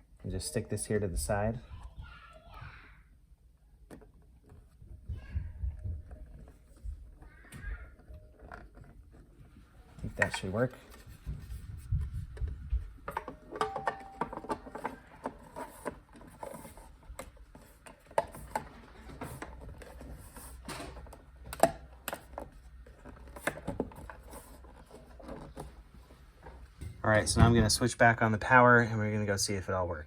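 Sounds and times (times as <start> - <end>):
small parts and tools handled: 6.1 - 27.0.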